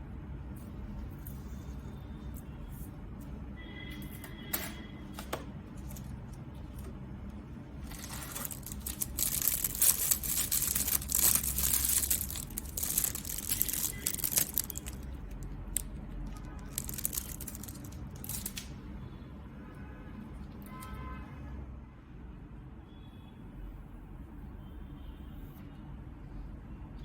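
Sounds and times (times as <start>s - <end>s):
packaging crinkling: 7.8s - 18.7s.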